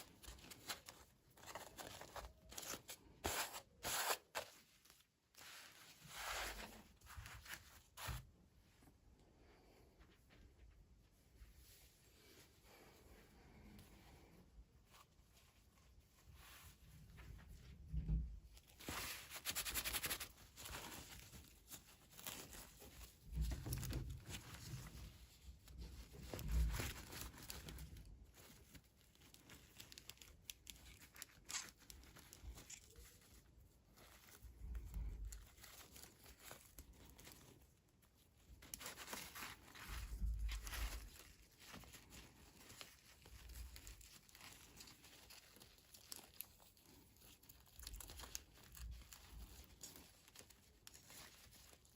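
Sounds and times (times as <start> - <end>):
packaging crinkling and tearing: 0.0 - 5.0, 26.2 - 33.4, 38.6 - 51.9.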